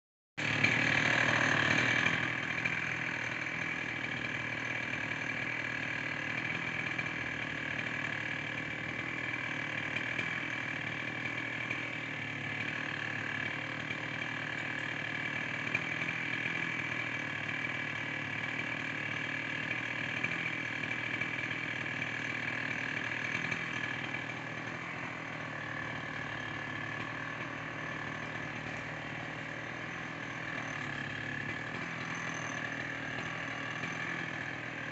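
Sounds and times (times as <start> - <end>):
chainsaw idling: 0.4 - 34.9.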